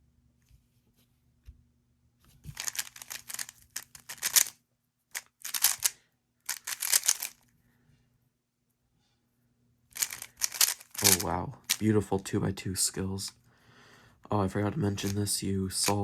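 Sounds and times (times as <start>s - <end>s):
puzzle cube plastic clicking: 2.5s - 7.4s, 10.0s - 11.9s, 14.9s - 15.2s, 15.8s - 16.0s.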